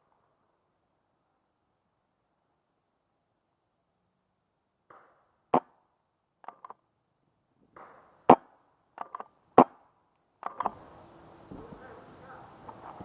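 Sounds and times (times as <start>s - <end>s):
paintball marker shots: 4.8s - 6.8s, 7.7s - 10.8s.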